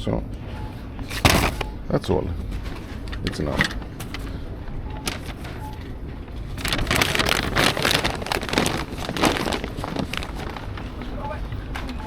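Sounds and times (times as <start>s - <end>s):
low background hum: 0.0s - 12.0s
bag crinkling and rustling: 5.0s - 12.0s.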